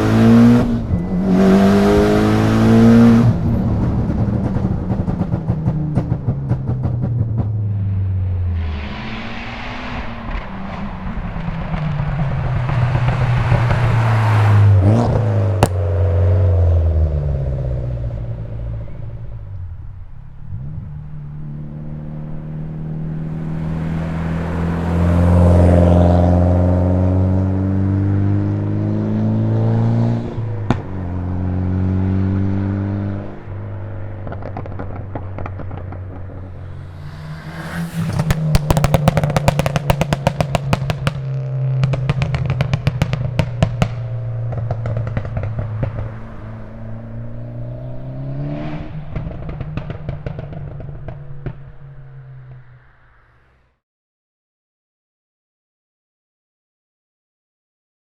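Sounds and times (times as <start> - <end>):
car engine revving: 0.0 - 53.0
sharp exhaust crack: 34.2 - 47.3.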